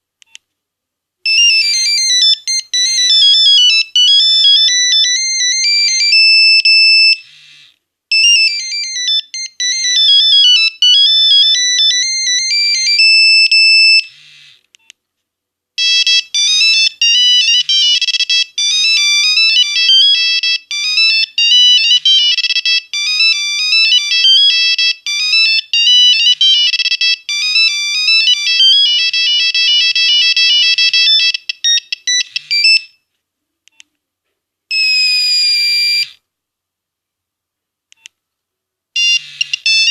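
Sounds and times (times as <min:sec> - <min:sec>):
monophonic ringtone melody: 0:01.3 - 0:07.3, 0:08.1 - 0:14.2, 0:15.8 - 0:33.0, 0:39.0 - 0:39.9.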